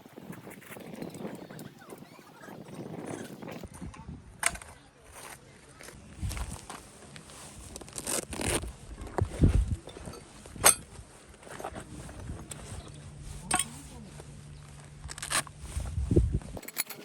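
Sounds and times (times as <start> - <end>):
gear rustling and scraping: 4.5 - 17.0.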